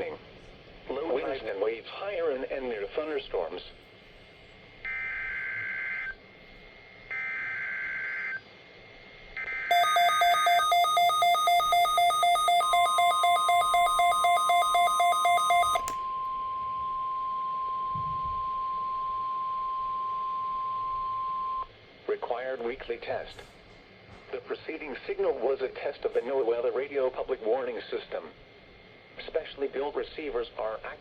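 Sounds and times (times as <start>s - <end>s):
steady warning tone: 9.7s - 16.4s
electronic alarm beeping: 9.7s - 16.6s.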